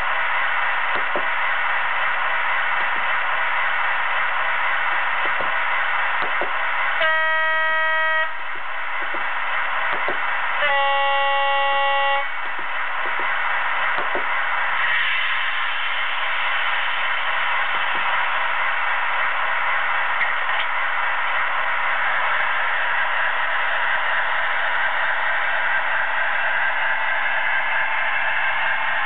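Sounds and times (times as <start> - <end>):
steady background noise: 0.0 - 29.0
model locomotive two-tone horn: 7.0 - 8.6, 10.6 - 12.6.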